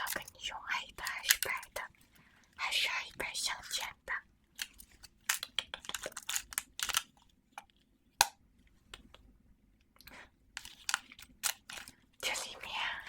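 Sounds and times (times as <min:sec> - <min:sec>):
crisp clicks and crackles: 0:00.0 - 0:02.2, 0:04.5 - 0:09.2, 0:09.9 - 0:13.0.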